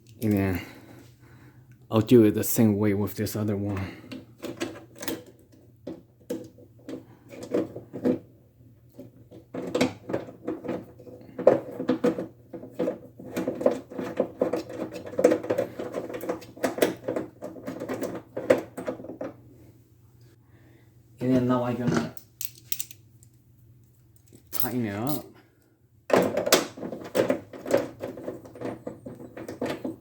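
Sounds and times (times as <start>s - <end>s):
small metallic clicks and rattles: 22.2s - 23.4s.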